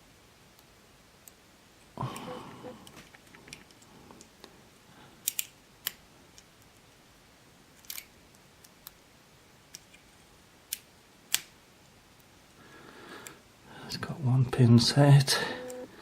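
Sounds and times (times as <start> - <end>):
lock pick clicking pins: 5.2 - 6.5.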